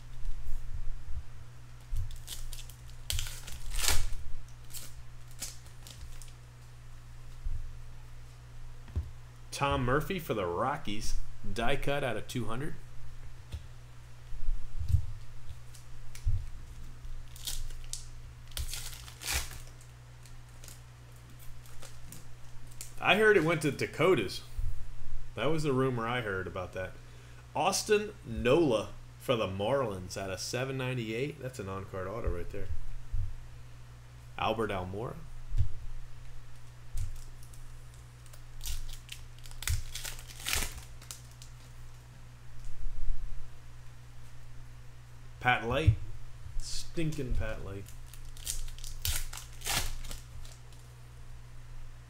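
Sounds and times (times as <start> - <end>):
low electrical hum: 0.0 - 52.0
wrapper crinkling and tearing: 2.0 - 6.4, 17.2 - 23.5, 36.6 - 41.9, 47.8 - 50.9.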